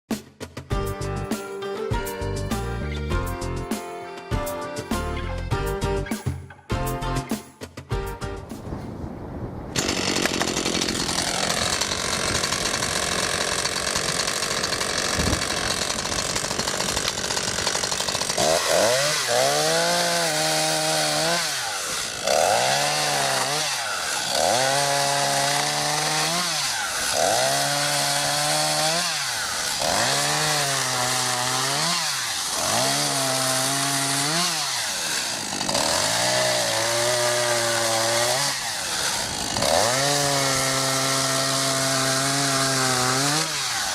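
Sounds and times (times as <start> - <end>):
chainsaw cutting wood: 9.8 - 43.9.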